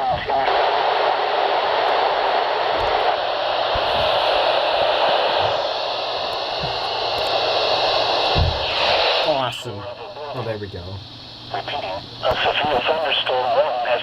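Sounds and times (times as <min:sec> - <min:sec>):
radio static hiss: 0:00.0 - 0:14.0
soft low thumps: 0:08.3 - 0:08.8.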